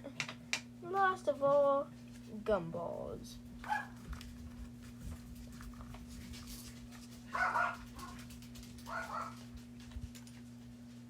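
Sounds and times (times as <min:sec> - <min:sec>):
dog barking: 0:03.6 - 0:04.0, 0:07.3 - 0:08.2, 0:08.9 - 0:09.4.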